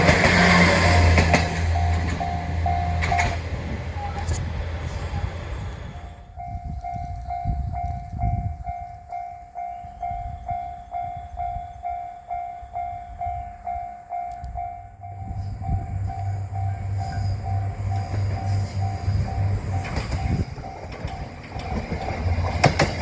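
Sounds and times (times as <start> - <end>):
low pulsing tone: 0.8 - 4.6, 9.7 - 21.7.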